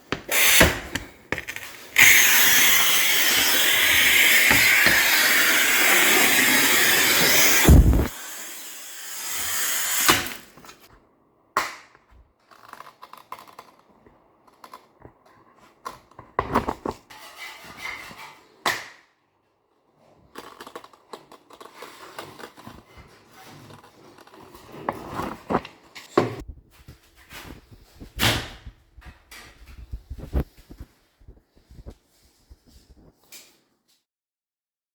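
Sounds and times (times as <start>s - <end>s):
knocks and clicks of tools: 0.1s - 8.1s
tile cutting hiss: 0.2s - 10.9s.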